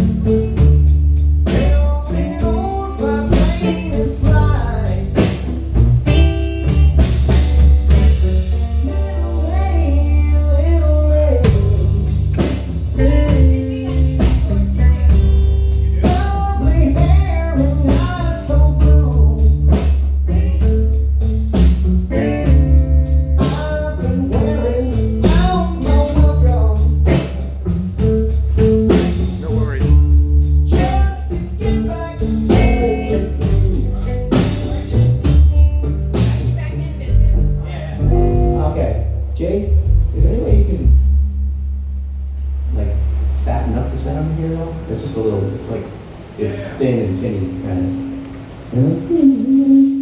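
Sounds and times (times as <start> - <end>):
steady drum beat: 0.0 - 49.3
guitar: 0.0 - 50.0
person singing: 8.8 - 12.2, 23.4 - 27.2, 29.3 - 30.0, 30.7 - 34.8.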